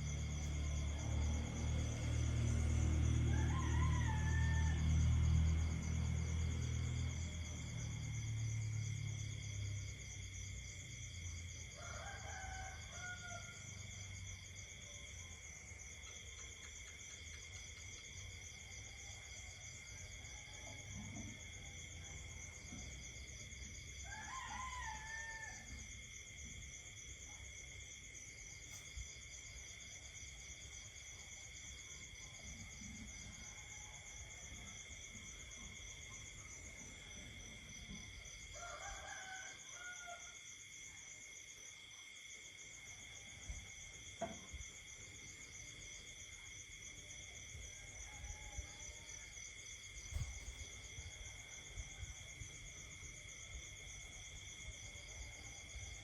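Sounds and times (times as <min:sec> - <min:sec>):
insects trilling: 0:00.0 - 0:56.0
rooster crowing: 0:00.3 - 0:07.6, 0:11.5 - 0:13.9, 0:23.3 - 0:26.0, 0:35.7 - 0:40.7, 0:47.6 - 0:52.3.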